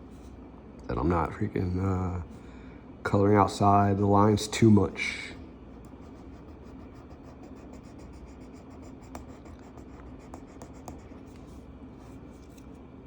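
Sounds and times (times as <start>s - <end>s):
low steady hum: 0.0s - 13.0s
marker rubbing on paper: 6.0s - 11.5s.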